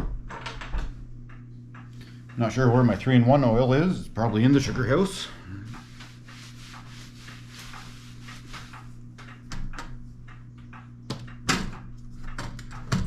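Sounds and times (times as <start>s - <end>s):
rustling and clicking: 5.8s - 13.0s.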